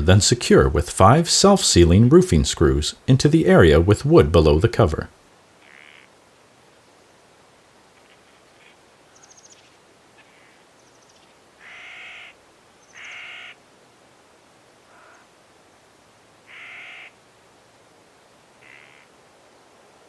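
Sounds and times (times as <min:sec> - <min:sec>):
crow cawing: 0:05.6 - 0:06.1, 0:11.6 - 0:13.6, 0:14.9 - 0:15.3, 0:16.5 - 0:17.2, 0:18.6 - 0:19.1
small birds chirping: 0:05.6 - 0:06.1, 0:08.0 - 0:12.2, 0:12.8 - 0:13.6.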